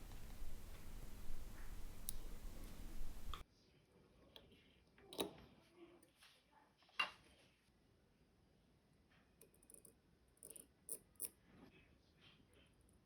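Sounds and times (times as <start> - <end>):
light hiss: 0.0 - 3.4.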